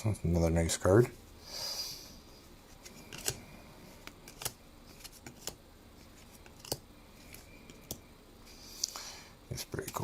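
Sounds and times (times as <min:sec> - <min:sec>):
trading cards clicking and snapping: 0:03.0 - 0:03.4, 0:04.0 - 0:05.6, 0:06.4 - 0:08.0.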